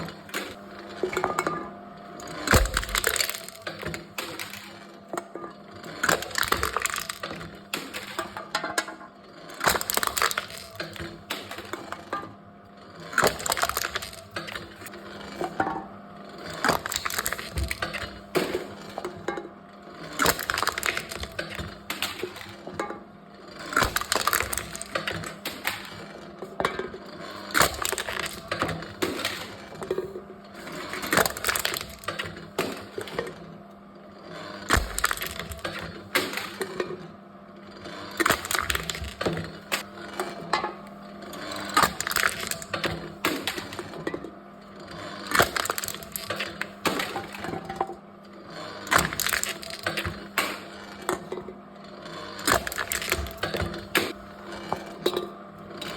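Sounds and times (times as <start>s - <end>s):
cans being crushed by machine: 0.0s - 55.9s.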